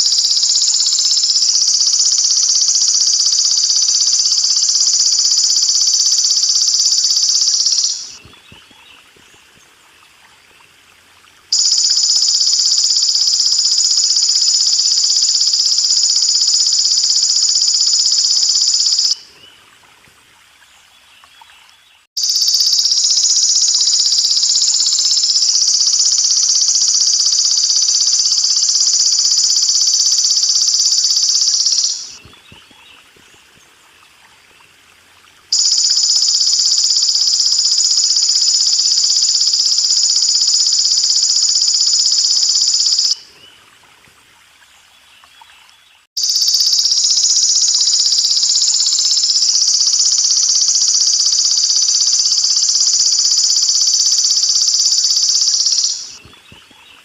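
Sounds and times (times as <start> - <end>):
insect high-pitched shrill: 0.0 - 8.3, 11.5 - 19.2, 22.2 - 32.3, 35.5 - 43.2, 46.2 - 56.3
faint trickling water: 8.2 - 13.3, 19.2 - 22.1, 32.2 - 35.9, 43.2 - 46.1, 56.2 - 57.0.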